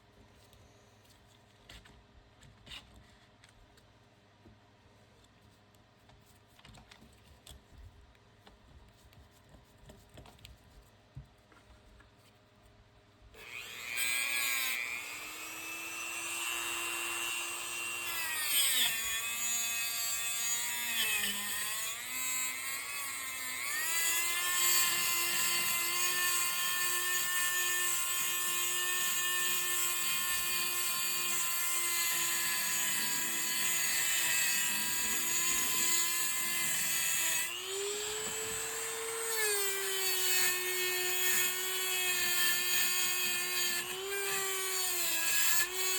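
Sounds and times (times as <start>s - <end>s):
high-speed motor tool whining: 13.4s - 18.9s.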